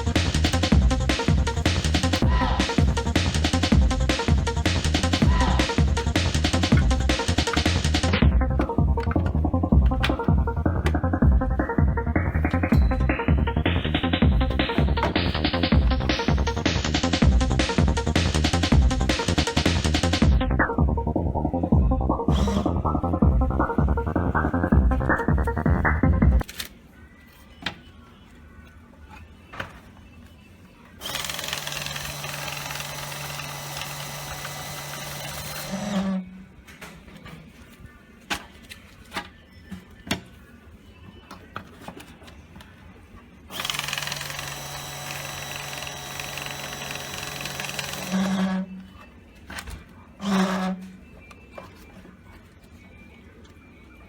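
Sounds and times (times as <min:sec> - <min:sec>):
banknote counting machine running: 0:31.0 - 0:36.2, 0:43.5 - 0:48.8, 0:50.2 - 0:50.8.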